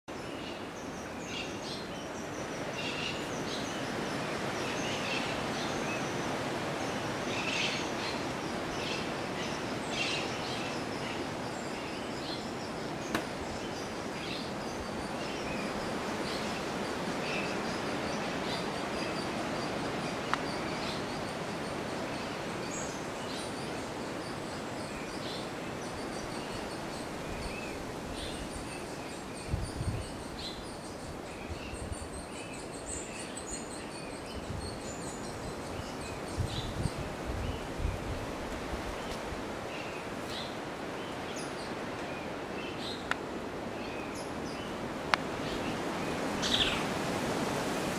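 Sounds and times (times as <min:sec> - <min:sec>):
birds chirping: 0:43.8 - 0:47.0.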